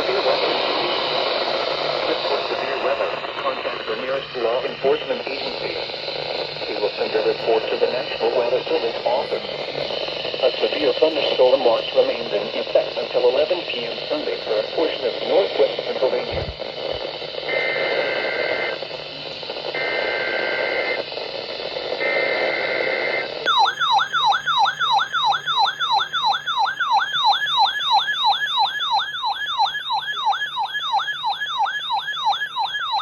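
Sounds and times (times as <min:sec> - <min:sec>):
radio static: 0:00.0 - 0:23.4
warbling siren-like alert tone: 0:23.5 - 0:33.0.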